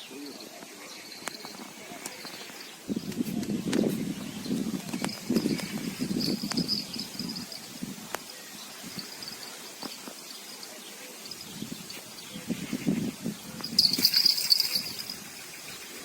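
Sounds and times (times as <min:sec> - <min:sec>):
faint high-pitched chirping: 0:04.0 - 0:16.0.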